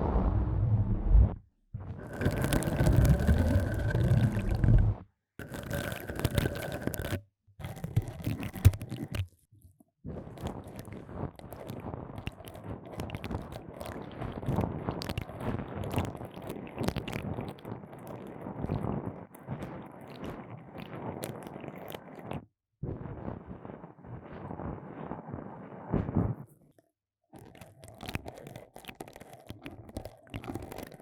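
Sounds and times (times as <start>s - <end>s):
pipe cleaners scraping microphone: 2.0s - 8.8s.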